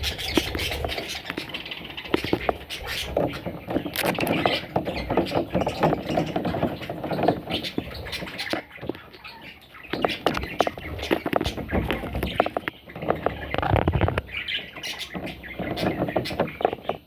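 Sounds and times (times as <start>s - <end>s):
chicks squeaking and chirping: 0.0s - 17.0s.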